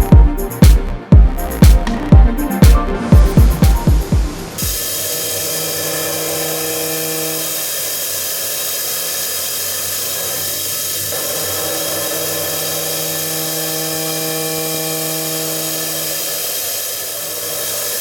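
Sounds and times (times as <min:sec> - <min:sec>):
coolant hiss: 0:03.2 - 0:18.0
machine spindle cutting whine: 0:04.3 - 0:18.0.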